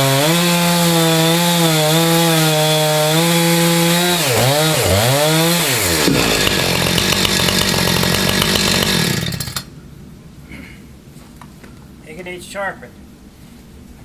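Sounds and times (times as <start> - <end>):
chainsaw engine running: 0.0 - 9.7.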